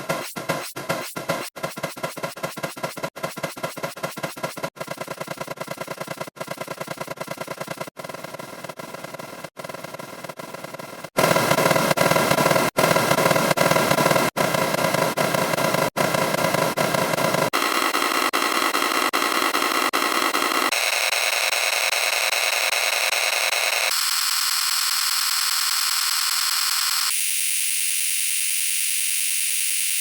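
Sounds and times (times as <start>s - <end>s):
layered looped sound effect cacophony: 11.2s - 27.3s.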